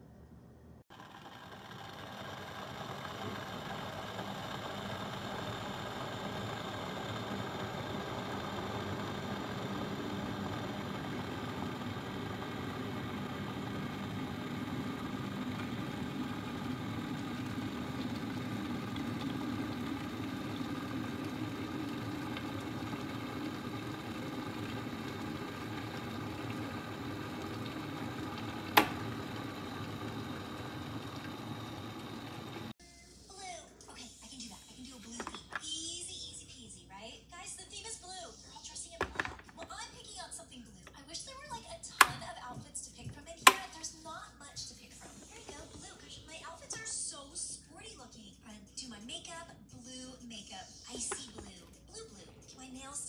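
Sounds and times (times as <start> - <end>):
kettle heating water: 0.9 - 32.8, 41.8 - 44.2, 50.9 - 52.9
kettle switch click: 28.7 - 29.0, 43.4 - 43.7.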